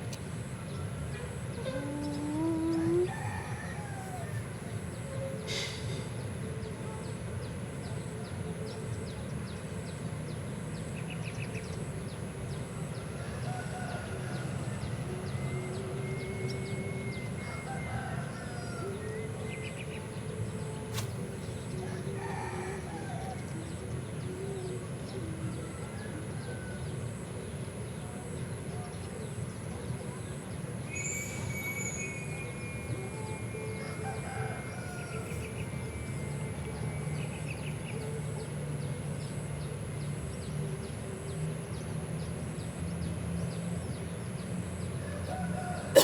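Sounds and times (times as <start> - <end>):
roosters crowing faintly: 45.0 - 46.0.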